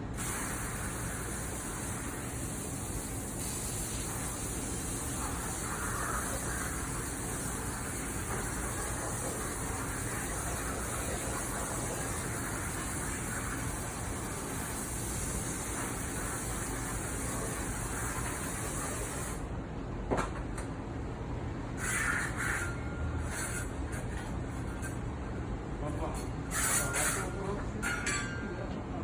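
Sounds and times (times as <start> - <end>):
water spraying into metal sink: 0.2 - 19.4.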